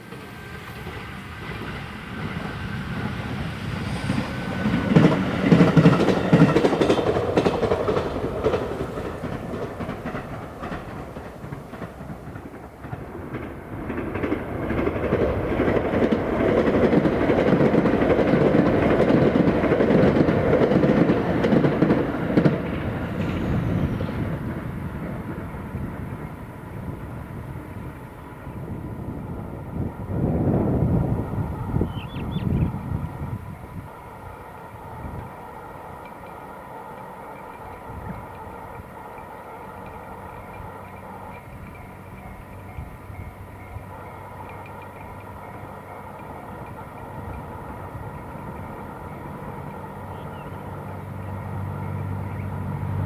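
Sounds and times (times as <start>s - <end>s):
trains passing: 0.0s - 53.0s
wheels clicking over rail joints: 4.1s - 27.0s, 34.6s - 52.0s.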